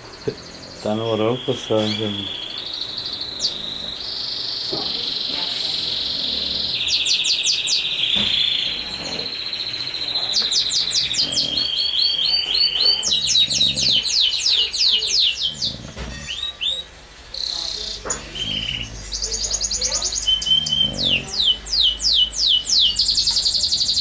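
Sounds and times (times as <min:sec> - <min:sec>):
birds chirping and trilling: 0:00.0 - 0:24.0
dog snoring: 0:03.1 - 0:16.9, 0:17.9 - 0:24.0.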